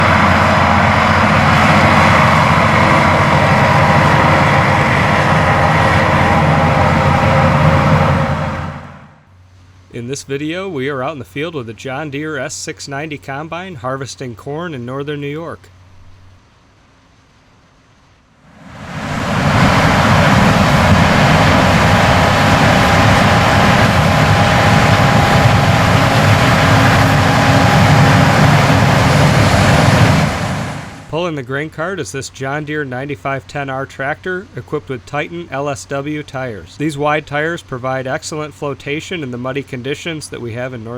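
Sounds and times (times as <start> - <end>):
mechanical rush: 0.0 - 9.2, 18.5 - 31.1
high machinery whine: 0.0 - 9.3, 18.5 - 31.2
diesel engine hum: 0.0 - 16.4, 18.5 - 31.2.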